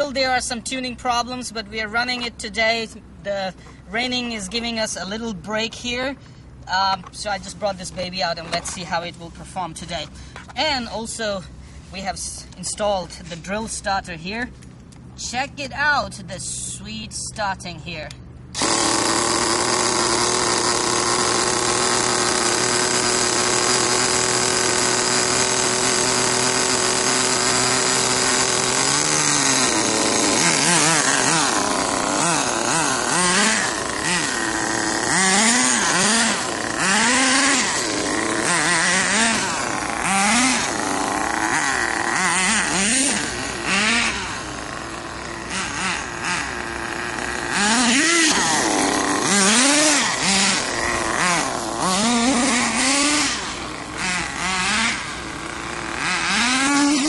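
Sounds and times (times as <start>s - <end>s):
nitro engine revving: 17.9s - 57.0s
small nitro engine running: 18.5s - 57.0s.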